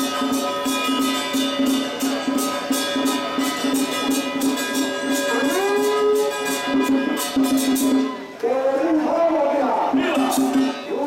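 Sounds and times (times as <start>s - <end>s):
percussion beat: 0.0s - 8.4s, 9.9s - 11.0s
held wind instrument notes: 0.0s - 8.7s.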